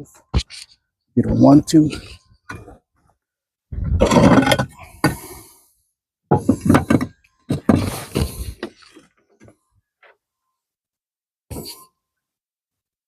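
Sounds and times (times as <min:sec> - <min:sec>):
roof tiles knocking and clattering: 0:06.3 - 0:08.8.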